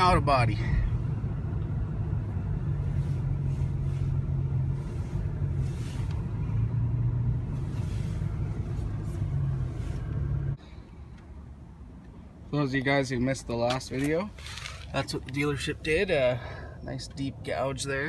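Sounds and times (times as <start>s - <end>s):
car engine running: 0.0s - 10.6s.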